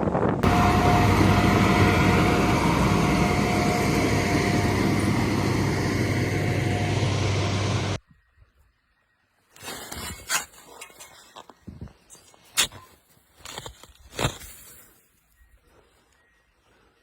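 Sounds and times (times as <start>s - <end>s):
faint steady whine: 0.4s - 8.0s
heavy vehicle engine running: 0.4s - 8.0s.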